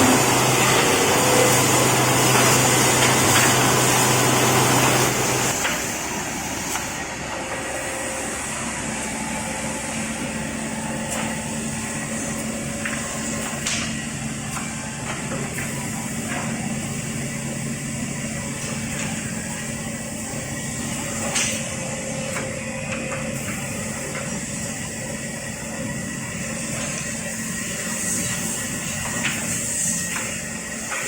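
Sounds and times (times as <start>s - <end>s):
machine motor hum: 0.0s - 31.0s.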